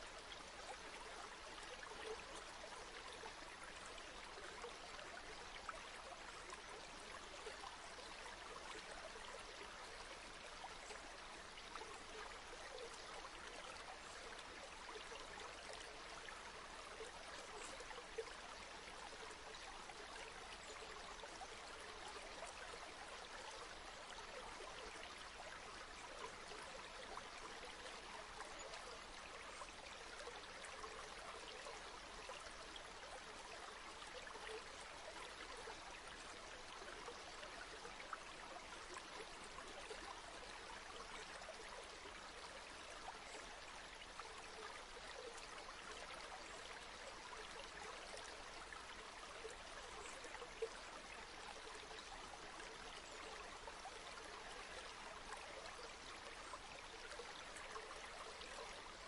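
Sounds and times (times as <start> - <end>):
river flowing: 0.0 - 59.0.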